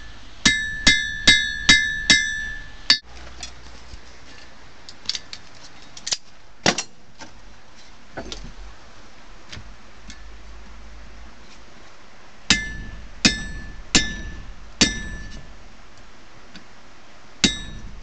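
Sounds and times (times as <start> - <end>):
hammer striking steel on anvil: 0.0 - 3.0, 12.5 - 15.5, 17.4 - 18.0.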